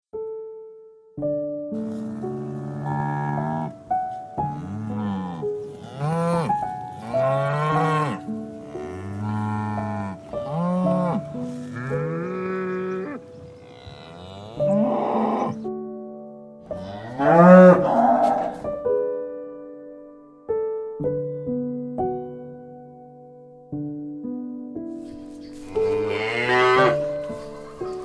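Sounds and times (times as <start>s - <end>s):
soft music: 0.1s - 28.0s
cow mooing: 1.8s - 15.6s, 16.7s - 18.6s, 25.6s - 28.0s.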